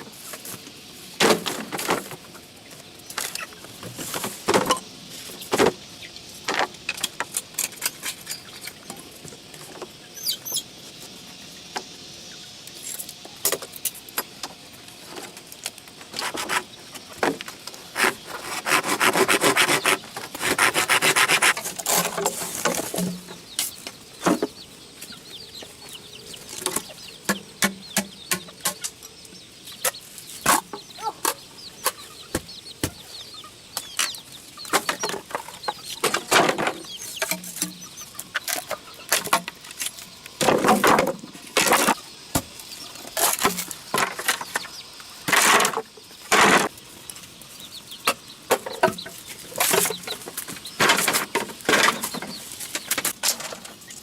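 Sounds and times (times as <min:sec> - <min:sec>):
rapid rasping strokes: 0:18.0 - 0:22.2.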